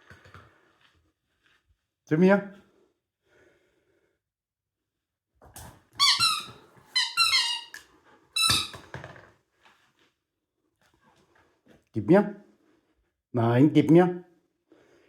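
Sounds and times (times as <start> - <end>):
squeaky dog toy squeaking: 6.0 - 7.8, 8.4 - 8.9.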